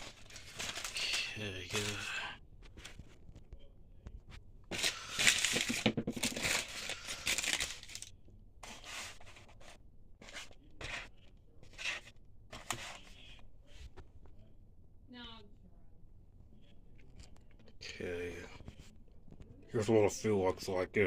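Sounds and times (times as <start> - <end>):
paper packaging rustling and tearing: 0.0 - 3.4, 4.7 - 9.6.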